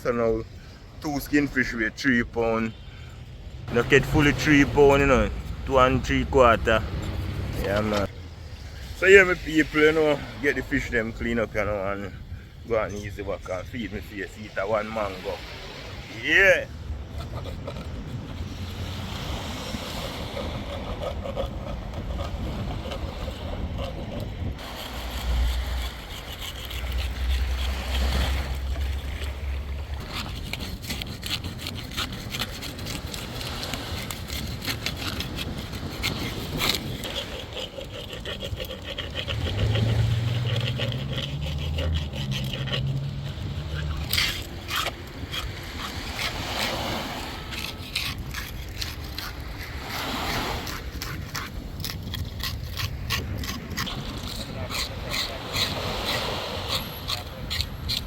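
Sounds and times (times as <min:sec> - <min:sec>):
scraping and clicking: 0:30.0 - 0:49.8, 0:50.6 - 0:58.0.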